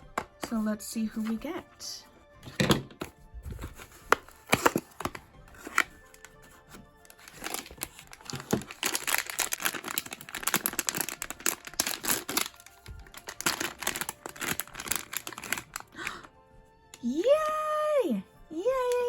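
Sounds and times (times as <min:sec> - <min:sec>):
packaging crinkling and tearing: 0:03.5 - 0:16.3.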